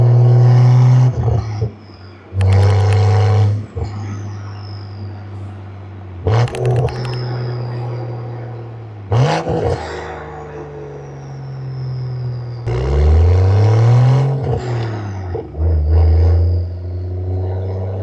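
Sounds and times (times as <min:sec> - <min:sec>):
turbocharged car engine pulling: 0:00.0 - 0:18.0
throttle blips: 0:02.4 - 0:03.1, 0:06.4 - 0:07.3.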